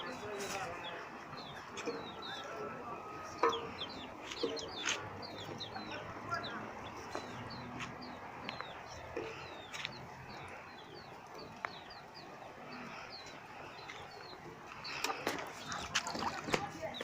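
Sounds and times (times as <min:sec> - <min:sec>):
birds chirping: 0:00.0 - 0:17.0.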